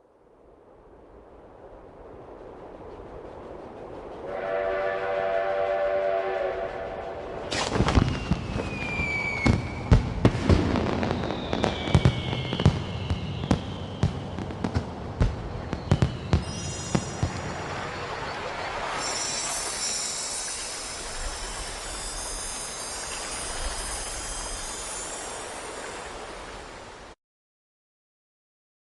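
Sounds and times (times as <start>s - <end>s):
steam whistle chord: 4.2s - 9.9s
fireworks crackling: 4.2s - 26.9s
fireworks falling whistles: 4.3s - 26.9s
fireworks bangs and pops: 7.5s - 18.4s.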